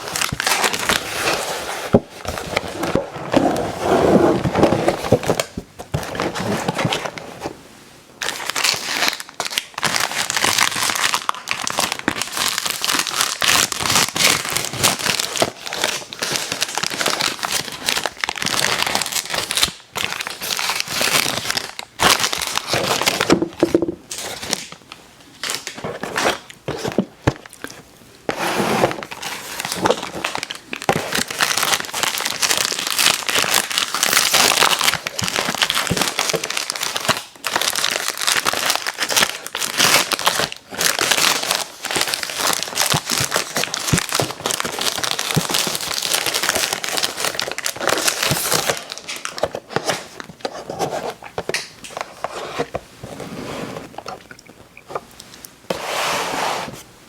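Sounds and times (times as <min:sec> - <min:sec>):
plastic wrappers crinkling and tearing: 0:00.0 - 0:01.6, 0:08.2 - 0:27.8, 0:29.0 - 0:52.8.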